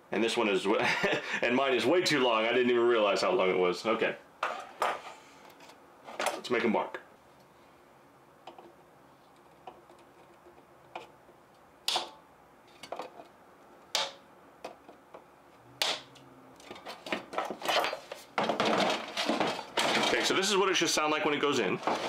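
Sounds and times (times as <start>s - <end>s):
light tool clatter: 16.6s - 20.3s.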